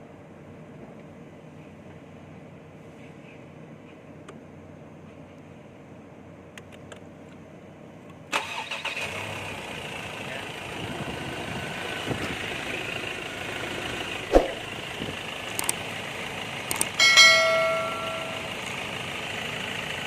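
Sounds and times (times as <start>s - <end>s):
truck engine starting and running: 8.3s - 20.0s.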